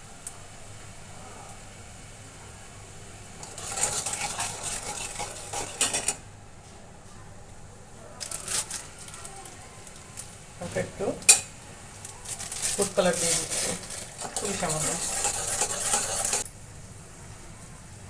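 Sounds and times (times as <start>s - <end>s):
metal spoon scraping metal pot: 3.4s - 6.2s, 12.4s - 16.4s.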